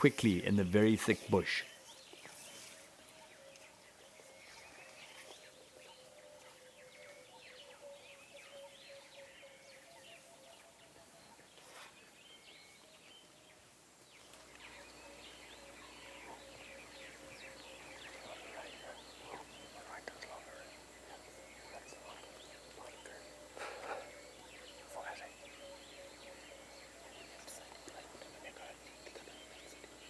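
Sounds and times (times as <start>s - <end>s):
faint steady tone: 14.3s - 30.0s
small birds chirping and whistling: 14.6s - 30.0s.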